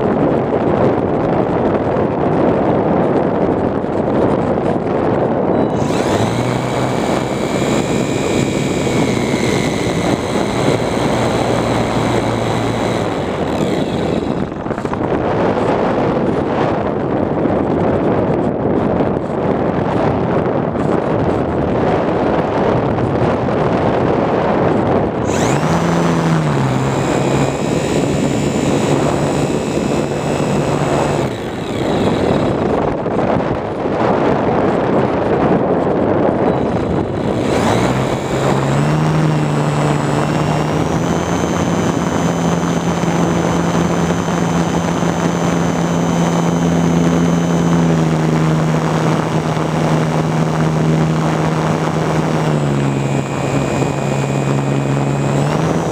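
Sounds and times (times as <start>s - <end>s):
wind rushing over microphone: 0.0s - 55.9s
model airplane motor humming: 5.5s - 16.5s, 25.0s - 33.9s, 34.6s - 55.9s.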